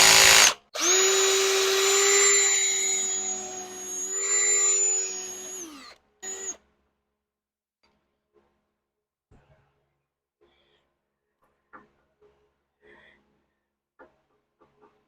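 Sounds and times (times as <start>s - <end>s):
electric power drill running: 0.0s - 6.6s.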